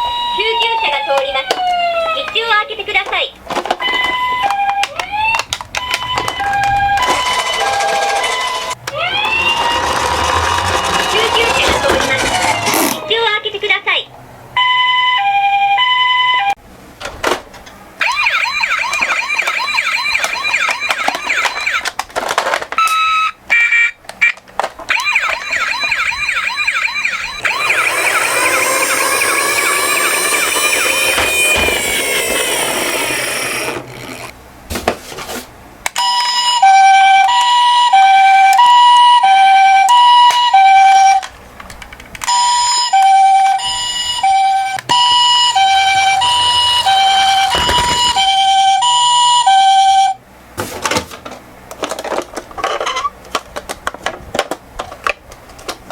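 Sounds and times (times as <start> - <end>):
fast warbling siren: 0.0 - 2.2, 5.0 - 12.7, 18.0 - 21.9, 24.9 - 34.3, 43.4 - 49.8
long falling siren wail: 0.0 - 2.3, 4.4 - 12.7, 24.9 - 33.8, 36.6 - 41.2, 42.9 - 50.1
two-tone toy siren: 0.0 - 2.4, 3.8 - 12.8, 14.6 - 16.5, 18.0 - 22.0, 22.8 - 34.3, 36.0 - 41.3, 42.2 - 50.2.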